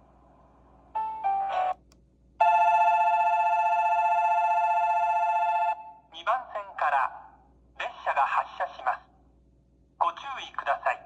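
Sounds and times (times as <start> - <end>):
electronic departure bell: 2.4 - 5.8.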